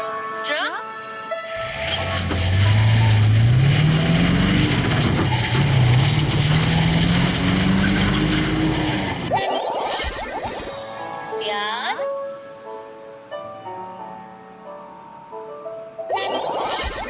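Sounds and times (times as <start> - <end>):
truck engine revving: 1.5 - 9.4.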